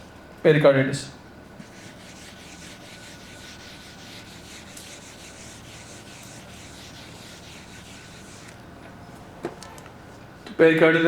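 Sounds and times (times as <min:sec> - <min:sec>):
scratchy writing on a board: 0:01.6 - 0:08.6.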